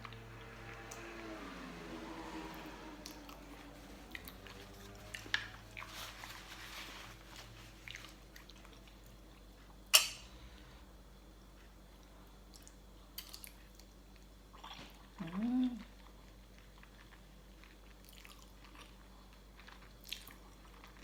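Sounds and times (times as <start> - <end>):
chewing and sucking: 14.6 - 21.0.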